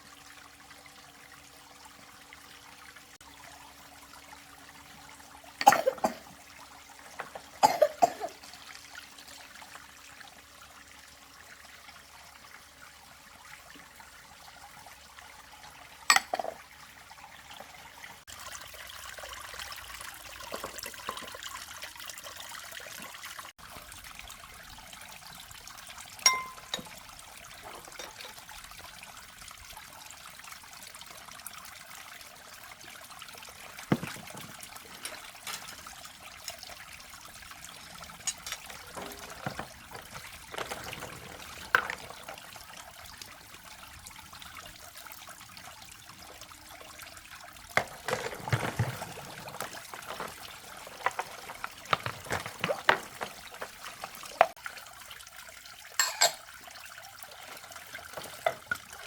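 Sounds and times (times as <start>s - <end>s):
water trickling: 0.0s - 59.0s
clicks and knocks: 33.9s - 35.7s.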